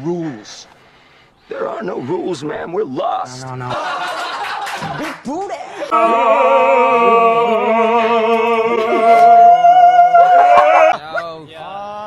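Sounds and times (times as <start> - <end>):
voices singing held notes: 5.9 - 11.0.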